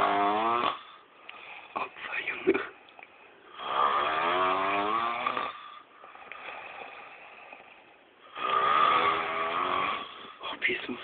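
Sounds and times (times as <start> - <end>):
man snoring loudly: 0.0 - 1.9, 3.5 - 5.8, 8.3 - 10.4
quiet breathing out: 0.8 - 4.1, 5.4 - 9.2, 9.9 - 11.0.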